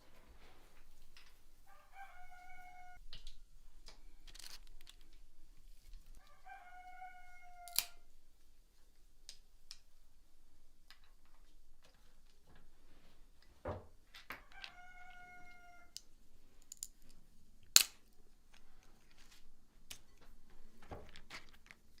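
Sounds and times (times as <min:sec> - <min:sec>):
rooster crowing: 0:01.6 - 0:03.0, 0:06.2 - 0:08.1, 0:14.4 - 0:16.0.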